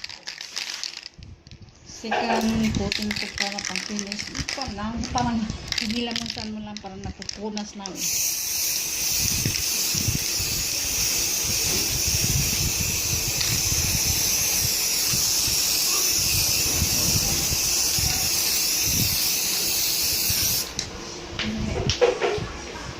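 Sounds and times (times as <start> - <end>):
spray hissing: 8.0 - 20.7.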